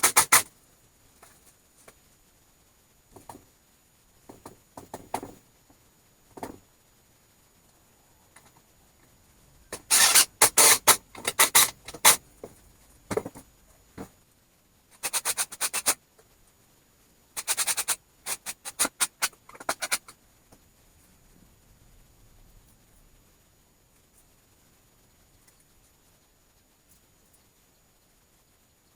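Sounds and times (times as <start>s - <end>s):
hand tool rasping wood: 0.0s - 0.4s.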